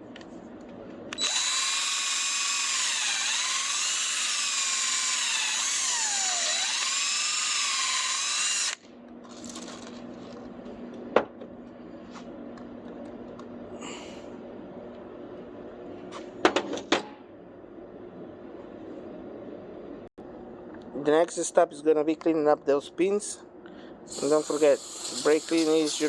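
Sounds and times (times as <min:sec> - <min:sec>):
power drill whine: 0:01.1 - 0:08.8.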